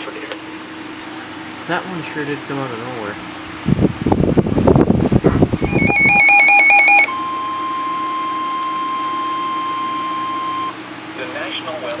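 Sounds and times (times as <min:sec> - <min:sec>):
steady alarm tone: 0:05.3 - 0:10.9
buzzing digital data burst: 0:05.6 - 0:07.1
warbling electronic alarm beep: 0:05.6 - 0:10.8.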